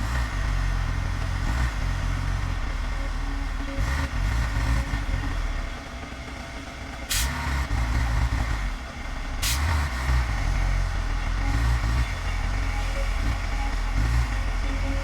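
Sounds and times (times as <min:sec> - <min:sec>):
diesel machinery rumbling: 0:00.0 - 0:15.0.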